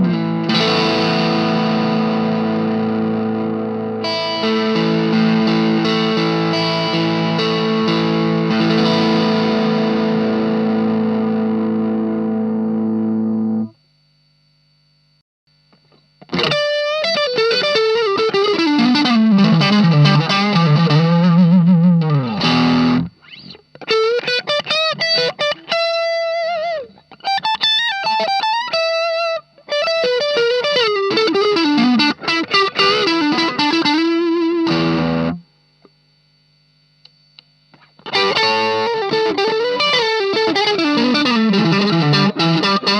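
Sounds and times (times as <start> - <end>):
overdriven electric guitar: 0.0 - 13.8, 15.6 - 42.9
low amp hum: 0.0 - 42.9.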